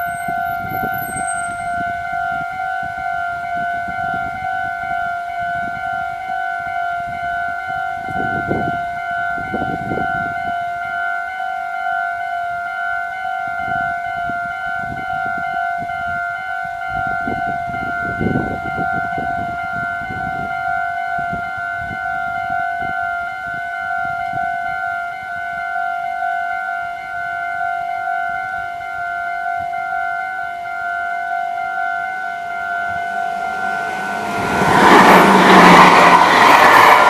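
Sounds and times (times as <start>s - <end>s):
train rumble and wheel clatter: 32.9s - 37.0s.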